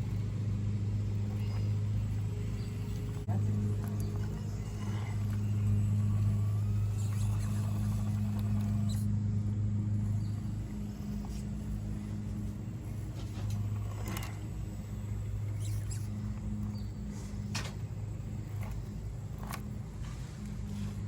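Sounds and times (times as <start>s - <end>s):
toy car electric motor hum: 0.0s - 21.0s.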